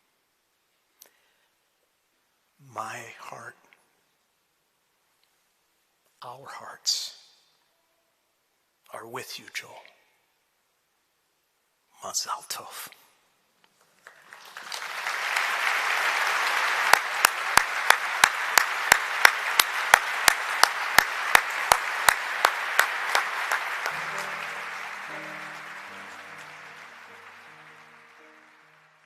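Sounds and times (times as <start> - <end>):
congregation applauding: 13.8 - 29.0
soft instrumental music: 22.0 - 29.0.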